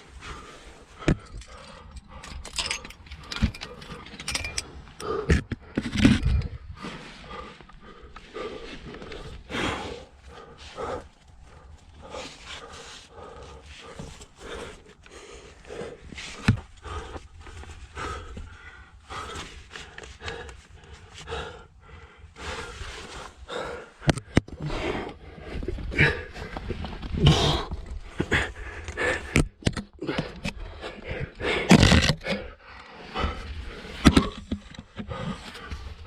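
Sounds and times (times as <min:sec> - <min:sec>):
person breathing hard: 0:00.0 - 0:36.0
person grunting: 0:27.2 - 0:27.8.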